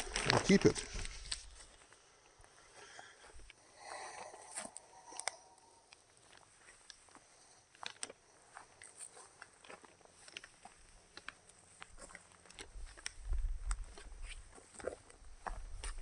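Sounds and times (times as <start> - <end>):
footsteps on gravel: 7.8 - 16.0.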